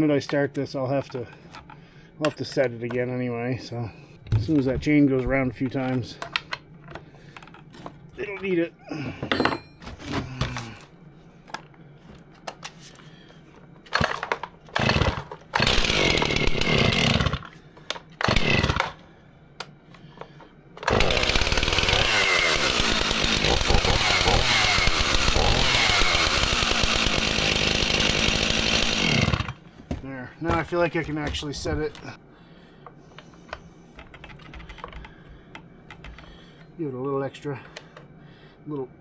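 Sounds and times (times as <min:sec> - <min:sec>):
chainsaw starting and running: 0:14.0 - 0:17.5, 0:18.2 - 0:19.0, 0:20.8 - 0:29.6.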